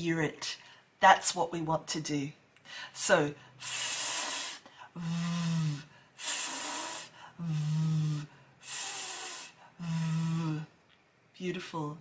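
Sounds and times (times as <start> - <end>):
woman making buzzing v sound: 3.6 - 10.7
woman making hissing f sound: 3.6 - 10.7.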